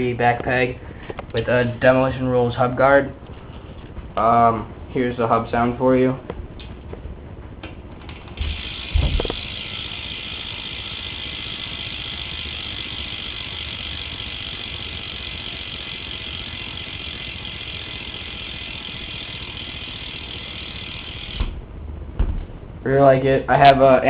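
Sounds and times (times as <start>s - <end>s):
bike hub ratchet buzzing: 8.0s - 21.6s
brief thump: 22.2s - 22.6s.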